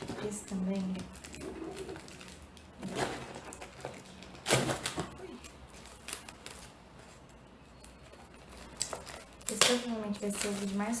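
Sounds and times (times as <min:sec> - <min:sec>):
books and packaging handled: 0:00.0 - 0:11.0.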